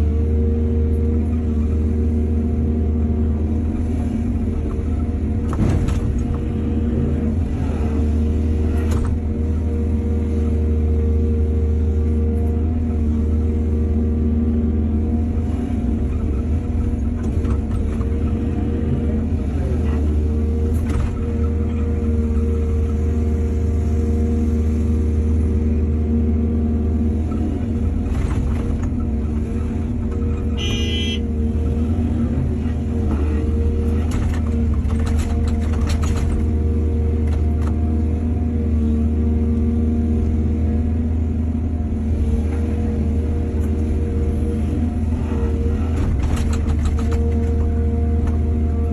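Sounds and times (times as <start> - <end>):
excavator diesel engine running: 0.0 - 48.9
brief high squeal: 30.6 - 31.2.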